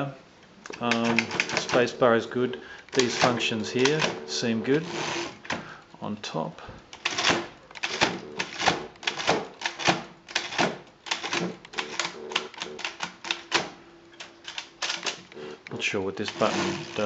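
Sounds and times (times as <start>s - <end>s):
manual typewriter clacking: 0.7s - 2.1s, 2.9s - 5.7s, 6.9s - 15.3s, 16.2s - 17.0s.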